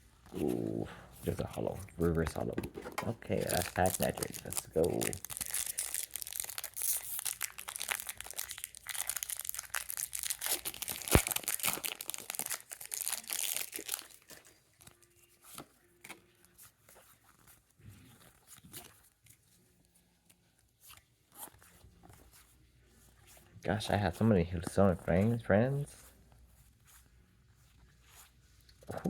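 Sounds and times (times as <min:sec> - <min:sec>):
foil wrapper crinkling and tearing: 0:03.2 - 0:22.5.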